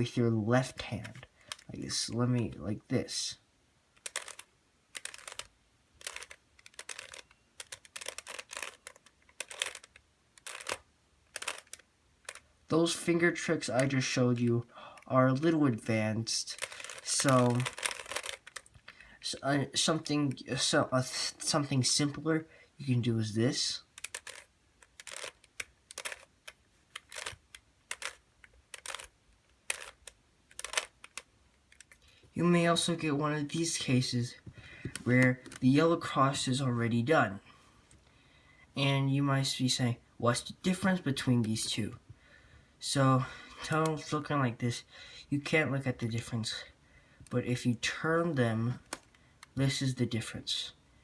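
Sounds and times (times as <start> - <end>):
puzzle cube clicking turns: 0.7 - 2.6, 3.9 - 15.1, 15.7 - 19.0, 23.8 - 32.2, 34.5 - 35.6, 48.8 - 49.6.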